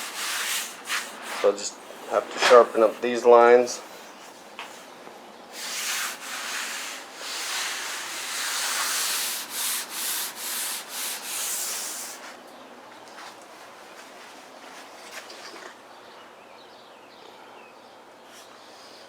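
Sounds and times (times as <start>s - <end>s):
sandpaper rubbing on filler: 0.0s - 3.1s, 5.6s - 12.3s.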